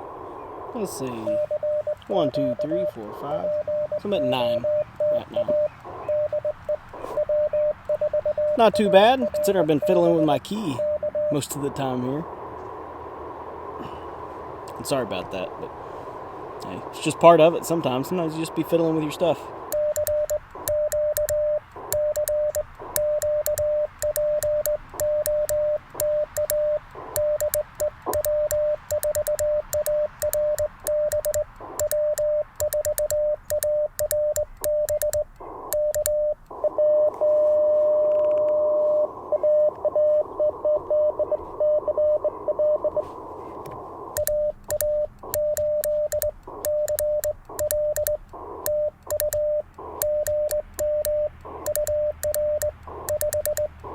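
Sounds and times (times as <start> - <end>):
radio band noise hiss: 0.0 - 52.0, 52.8 - 53.1
morse code sidetone: 1.0 - 12.2, 16.6 - 43.2, 44.0 - 53.9
morse key clicks: 19.7 - 36.6, 44.2 - 53.9.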